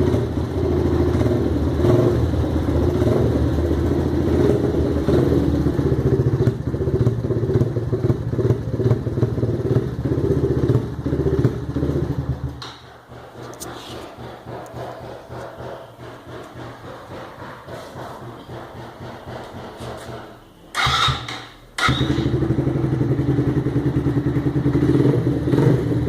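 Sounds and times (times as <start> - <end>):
motorcycle engine rumbling: 0.0 - 26.0.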